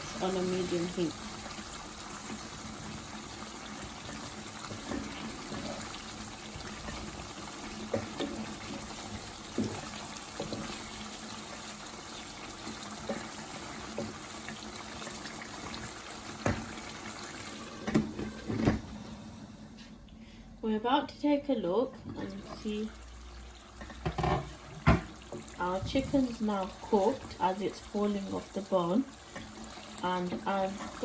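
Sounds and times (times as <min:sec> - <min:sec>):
food simmering in a pan: 0:00.0 - 0:19.9, 0:22.0 - 0:31.0
knocks on a pan: 0:24.0 - 0:25.2.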